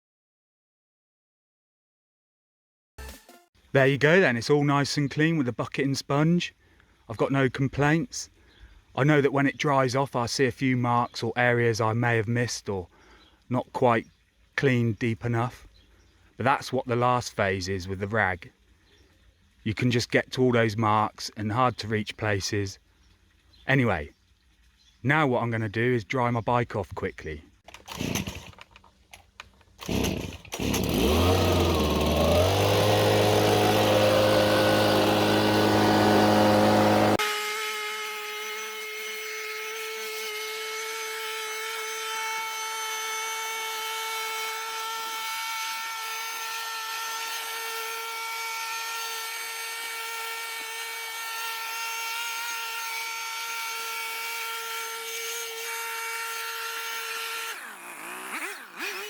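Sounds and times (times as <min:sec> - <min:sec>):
leaf blower running: 0:27.8 - 0:28.6, 0:29.8 - 0:59.0.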